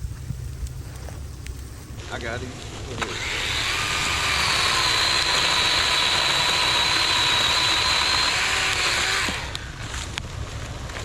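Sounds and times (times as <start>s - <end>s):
chainsaw running: 2.8s - 10.2s.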